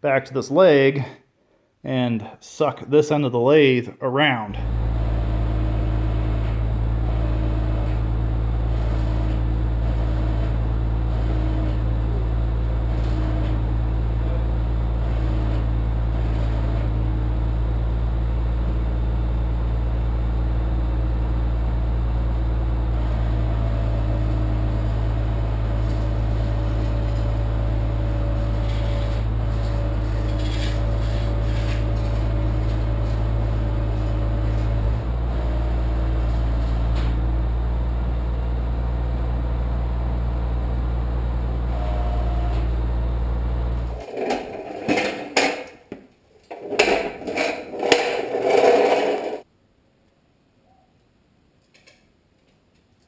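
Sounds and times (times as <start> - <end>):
motor low drone: 4.6 - 45.7
faint higher whine: 18.4 - 44.0.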